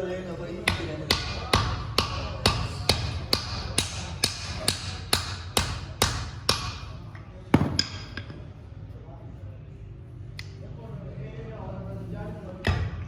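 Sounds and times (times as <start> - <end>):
hammer striking metal: 0.7 - 6.9, 7.6 - 8.4.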